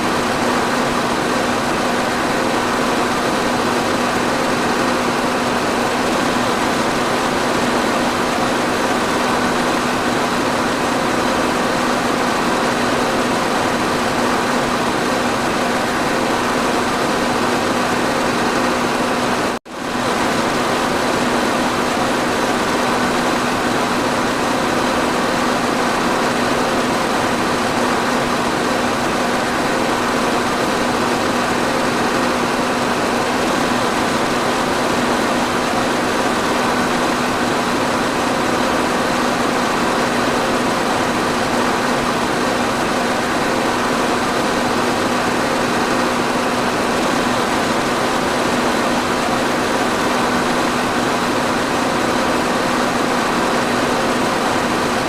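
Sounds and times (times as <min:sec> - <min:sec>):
electric fan running: 0:00.0 - 0:55.0.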